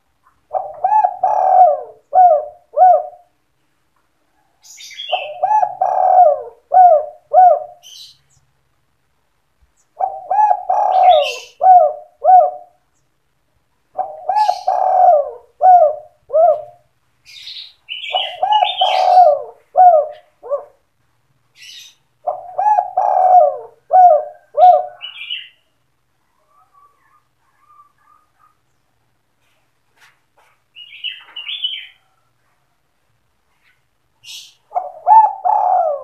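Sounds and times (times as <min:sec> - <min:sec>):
dove cooing: 0:00.3 - 0:03.4, 0:04.8 - 0:08.0, 0:10.0 - 0:12.8, 0:13.9 - 0:16.9, 0:17.9 - 0:20.8, 0:22.2 - 0:25.6, 0:34.3 - 0:36.0.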